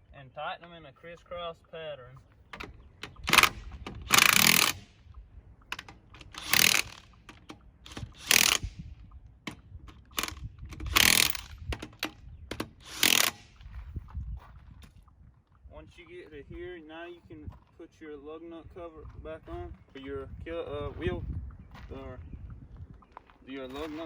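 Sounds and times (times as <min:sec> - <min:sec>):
impact wrench bursts: 0:02.6 - 0:05.0, 0:05.7 - 0:13.6.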